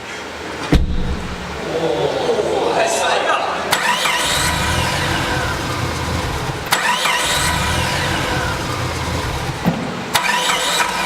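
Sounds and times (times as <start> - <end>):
engine cranking and failing: 3.7 - 11.0.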